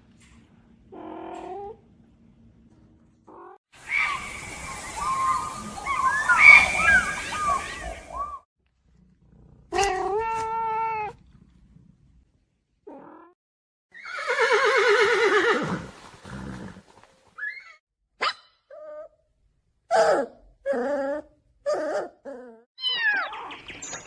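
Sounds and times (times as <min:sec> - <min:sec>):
cat meowing: 0:22.8 - 0:23.5
cat yowling: 0:22.8 - 0:23.5.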